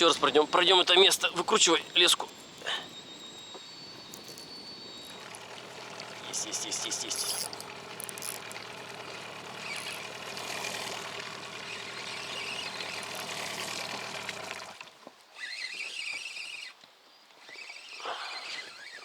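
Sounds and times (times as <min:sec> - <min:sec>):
outboard motor running: 0:00.0 - 0:14.9.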